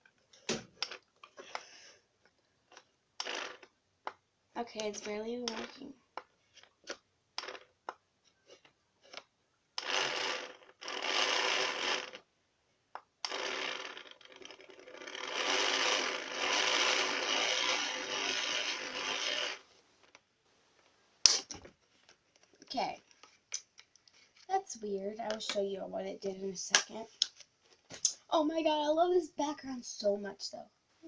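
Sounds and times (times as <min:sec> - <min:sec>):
toy blender motor buzzing: 0:03.2 - 0:03.7, 0:09.8 - 0:12.2, 0:13.2 - 0:19.6.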